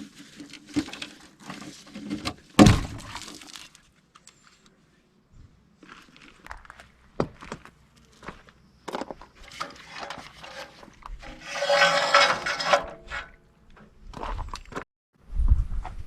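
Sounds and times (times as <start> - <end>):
rustle or scrape: 0.0 - 4.8, 9.4 - 13.4.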